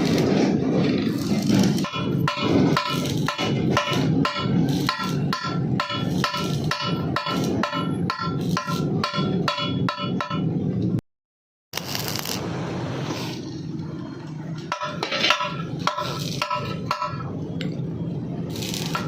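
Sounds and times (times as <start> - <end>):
hammer striking steel: 1.2 - 10.8, 14.6 - 17.8, 18.6 - 19.0.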